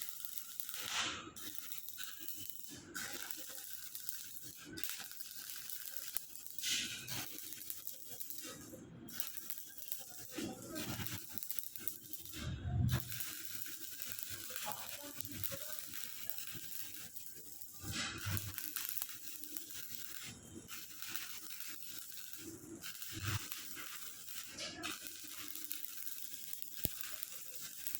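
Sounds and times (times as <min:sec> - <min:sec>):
arc welding crackling: 0:00.0 - 0:27.9.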